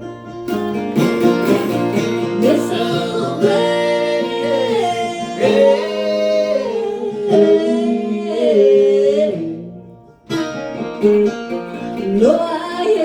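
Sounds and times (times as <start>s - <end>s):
acoustic guitar: 0.0s - 13.0s
bluegrass band playing: 0.0s - 13.0s
woman singing a ballad: 2.4s - 9.6s, 12.2s - 13.0s.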